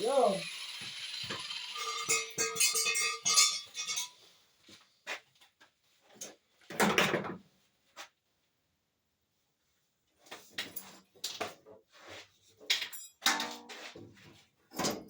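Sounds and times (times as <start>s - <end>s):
metal tools clattering: 1.8s - 4.2s, 12.6s - 13.8s.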